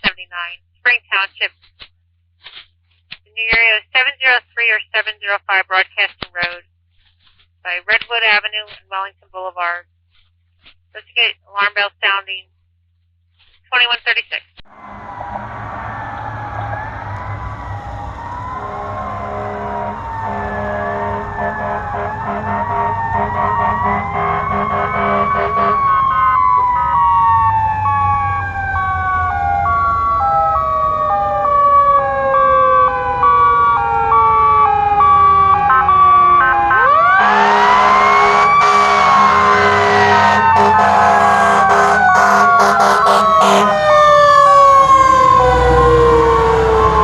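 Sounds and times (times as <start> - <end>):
electronic two-tone siren: 14.7 - 47.0
mechanical siren wailing: 14.7 - 47.0.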